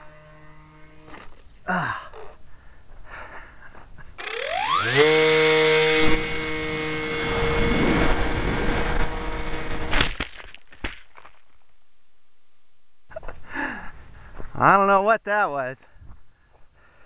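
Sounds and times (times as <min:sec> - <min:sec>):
electric propeller motor whine: 0:00.0 - 0:01.4, 0:04.2 - 0:10.2.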